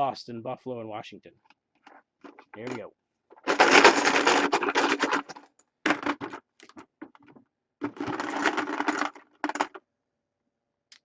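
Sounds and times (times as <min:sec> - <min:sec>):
chips rattling in a container: 0:03.4 - 0:06.8, 0:07.8 - 0:09.8.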